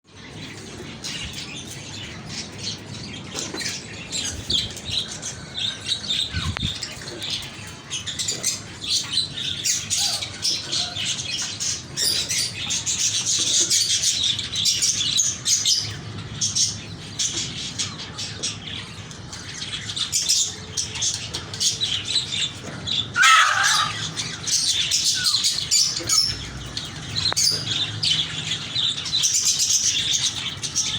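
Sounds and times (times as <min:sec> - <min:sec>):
budgerigars chattering: 0:03.1 - 0:16.8, 0:19.4 - 0:30.9
loud low squawk: 0:23.2 - 0:24.4.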